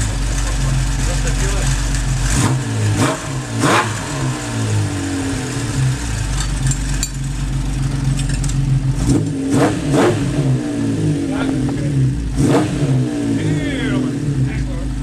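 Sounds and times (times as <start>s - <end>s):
motorcycle engine idling: 0.0s - 9.4s, 13.2s - 15.0s.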